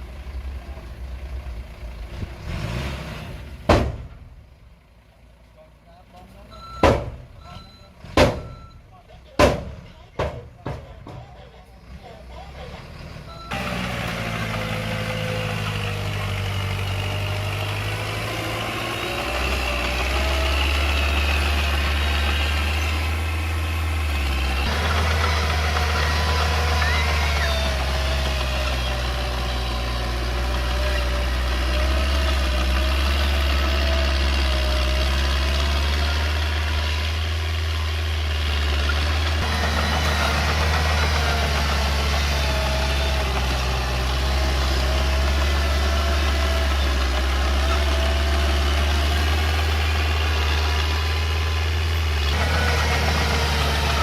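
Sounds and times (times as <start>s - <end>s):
diesel engine humming: 0.0s - 54.0s.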